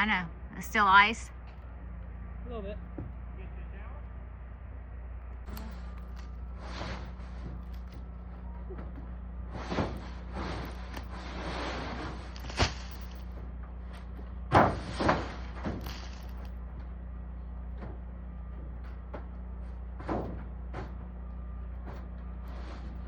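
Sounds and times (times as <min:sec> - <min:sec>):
low hum: 0:00.0 - 0:23.0
brush scraping on roof: 0:05.7 - 0:07.9, 0:09.5 - 0:16.2.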